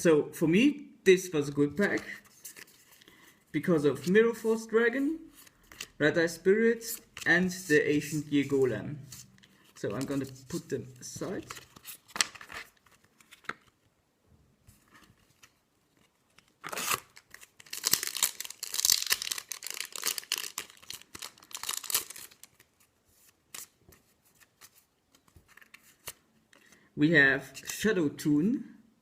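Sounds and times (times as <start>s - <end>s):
foil wrapper tearing and crinkling: 16.6s - 22.6s.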